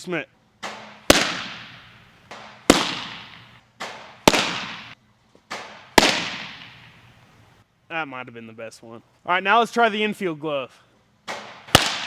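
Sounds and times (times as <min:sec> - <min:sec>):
baseball popping into mitt: 0:00.6 - 0:07.0.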